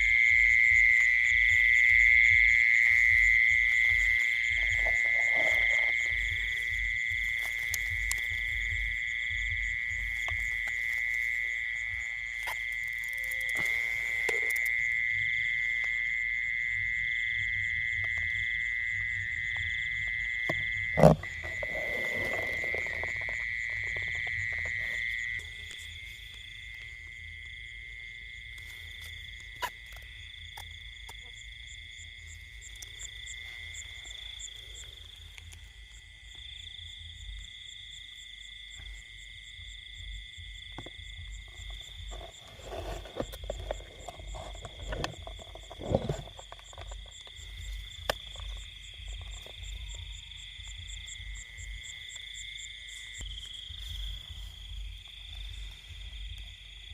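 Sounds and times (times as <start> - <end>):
crickets and insects trilling: 0.0 - 56.9
louder insect trill: 0.0 - 56.9.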